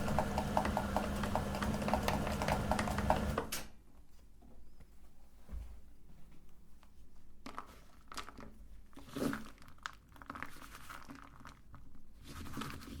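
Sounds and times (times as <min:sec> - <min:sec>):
candies crinkling and crunching: 0:07.4 - 0:12.8.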